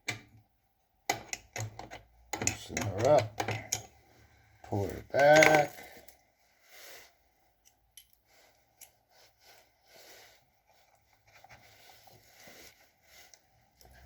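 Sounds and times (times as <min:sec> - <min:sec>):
light rustling of handling: 0:07.6 - 0:14.0.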